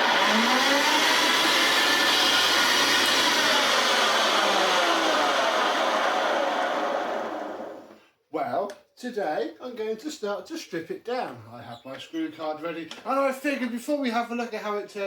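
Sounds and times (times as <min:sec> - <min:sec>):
upright vacuum cleaner running: 0:00.0 - 0:08.0.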